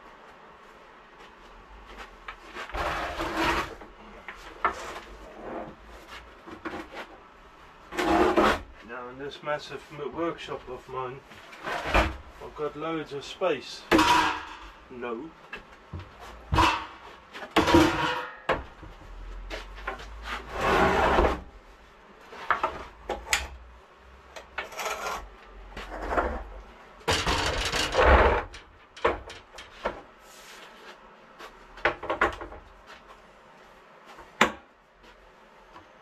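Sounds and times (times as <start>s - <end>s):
knocks and scrapes: 1.9s - 7.2s, 7.9s - 8.9s, 11.4s - 12.4s, 13.9s - 14.8s, 16.0s - 21.6s, 24.5s - 33.1s.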